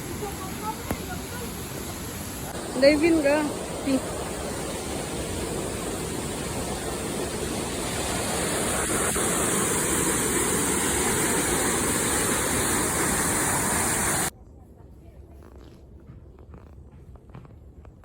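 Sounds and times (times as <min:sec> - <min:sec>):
steady rushing noise: 0:00.0 - 0:14.3.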